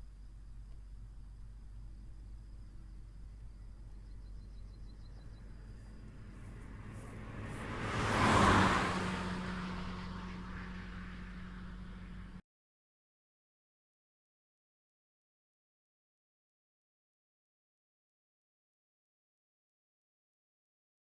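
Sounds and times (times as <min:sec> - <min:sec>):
low hum: 0:00.0 - 0:12.4
vehicle passing on highway: 0:00.7 - 0:12.4.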